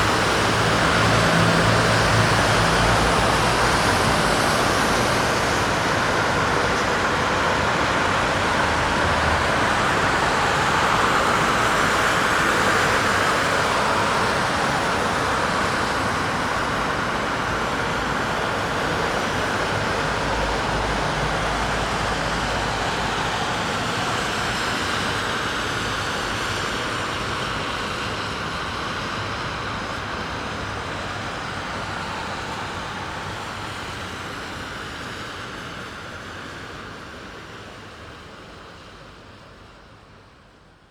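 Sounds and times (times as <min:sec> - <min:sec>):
street traffic noise: 0:00.0 - 0:40.9.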